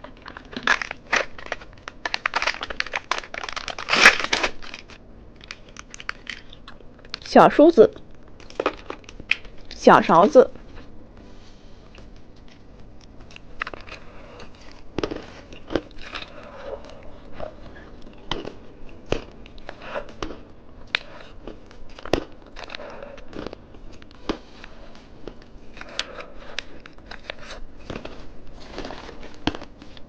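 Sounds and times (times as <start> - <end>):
candy crunching: 0.0 - 7.3, 12.0 - 30.0
wrapper crinkling: 0.0 - 7.3, 12.4 - 17.6.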